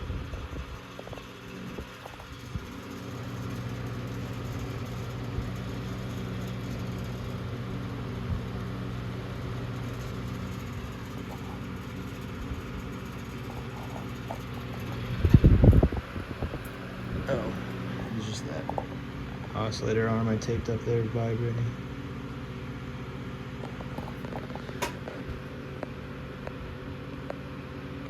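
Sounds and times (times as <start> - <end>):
fan vibration rattle: 0.0 - 28.0
table fan motor hum: 0.0 - 28.0.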